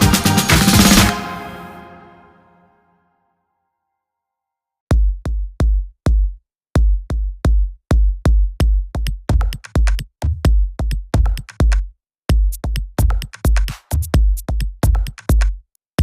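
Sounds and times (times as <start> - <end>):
electronic music with booming kick: 0.0 - 1.6, 4.9 - 15.5.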